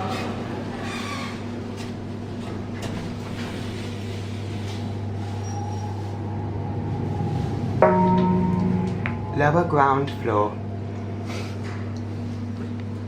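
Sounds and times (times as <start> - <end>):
lift running hum: 0.0 - 13.0
lift chime: 7.8 - 10.1.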